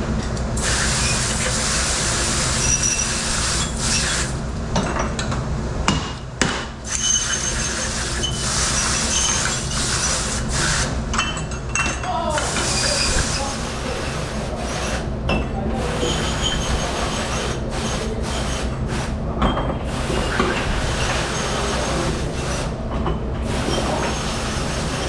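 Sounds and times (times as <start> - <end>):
dishes clinking: 11.1 - 13.2, 15.3 - 17.5, 19.4 - 22.2.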